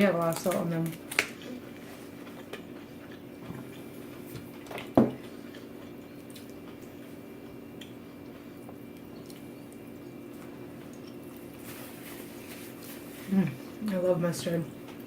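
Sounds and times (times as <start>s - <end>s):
person chewing: 0.4s - 11.7s.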